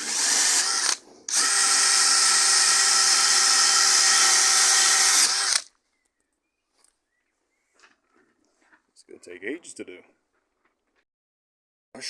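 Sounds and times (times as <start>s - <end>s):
power drill brushing wood: 0.0s - 5.6s.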